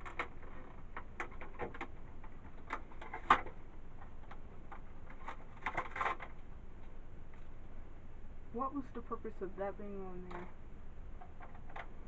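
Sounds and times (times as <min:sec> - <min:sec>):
rustling clicks: 0:00.0 - 0:07.6, 0:11.2 - 0:12.0.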